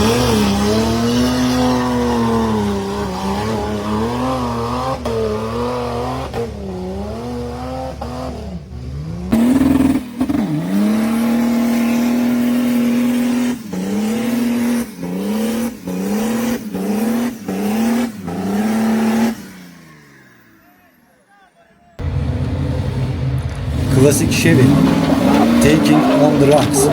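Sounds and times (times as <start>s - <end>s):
truck engine revving: 0.0s - 20.6s, 22.0s - 26.9s.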